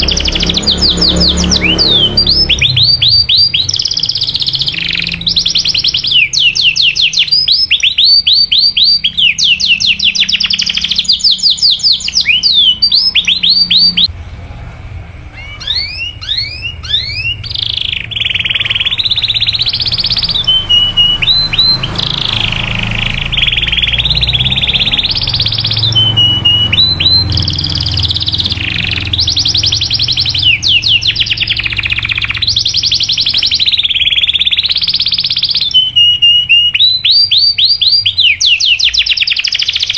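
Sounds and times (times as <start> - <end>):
canary singing trills: 0.0 - 14.1, 15.3 - 39.9.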